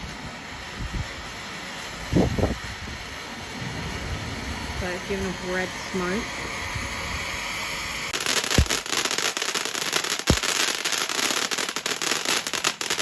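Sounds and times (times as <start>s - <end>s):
firework bangs: 0.0s - 13.0s
ground firework hissing and crackling: 0.0s - 13.0s.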